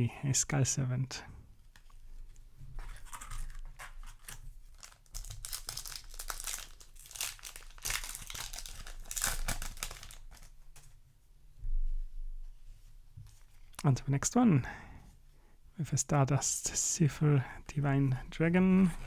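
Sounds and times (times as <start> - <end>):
foil pack crinkling and tearing: 2.8 - 10.9.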